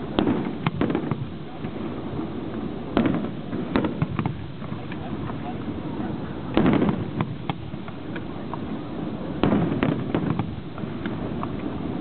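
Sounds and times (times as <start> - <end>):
fireworks exploding: 0.0 - 12.0
small pops and crackles: 6.5 - 8.7.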